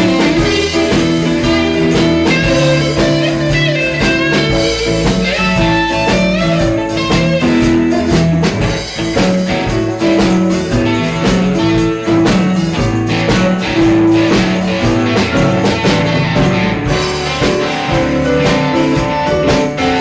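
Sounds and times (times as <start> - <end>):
blues band playing: 0.0 - 20.0
guitar: 0.0 - 20.0.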